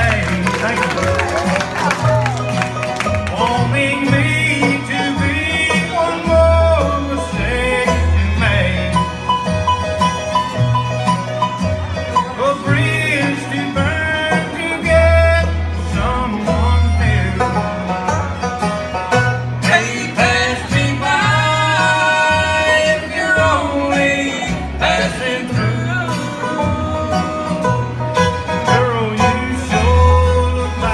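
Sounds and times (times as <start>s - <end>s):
banjo: 0.0s - 30.9s
bluegrass band playing: 0.0s - 30.9s.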